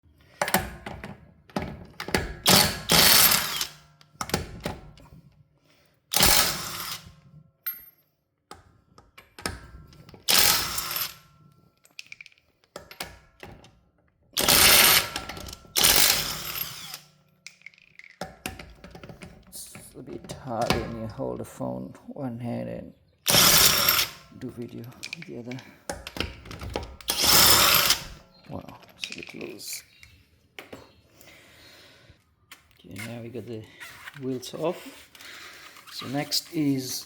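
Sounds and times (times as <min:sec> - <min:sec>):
impact wrench hammering: 0:14.4 - 0:17.0, 0:23.3 - 0:24.2, 0:27.1 - 0:28.2
clicks and clanks: 0:24.4 - 0:31.0.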